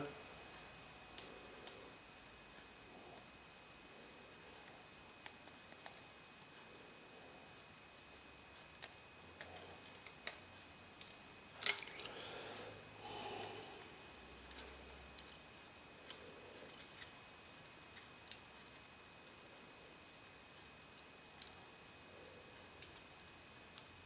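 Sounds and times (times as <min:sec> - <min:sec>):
small clicks and taps of tools: 0:14.4 - 0:15.4.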